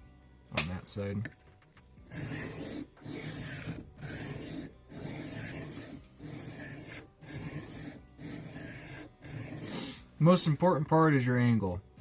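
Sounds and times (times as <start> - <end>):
knife rasping on sharpening plate: 2.1 - 10.0.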